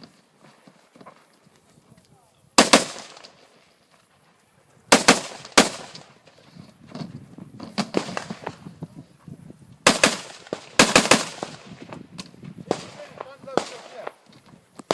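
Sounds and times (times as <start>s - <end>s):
rifle shots: 2.6s - 3.3s, 4.9s - 6.0s, 9.8s - 11.8s, 12.7s - 14.1s.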